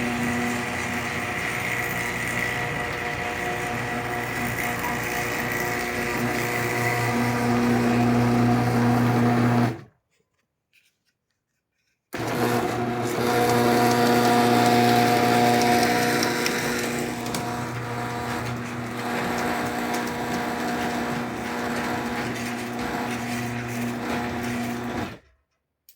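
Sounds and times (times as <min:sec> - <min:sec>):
garage door opener motor humming: 0:00.0 - 0:09.9, 0:12.2 - 0:25.2.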